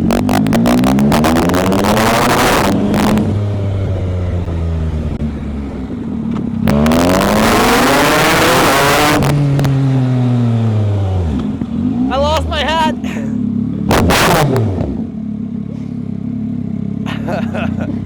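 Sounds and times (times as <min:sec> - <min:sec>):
engine revving hard: 0:00.0 - 0:03.4, 0:06.6 - 0:13.2, 0:13.8 - 0:15.1.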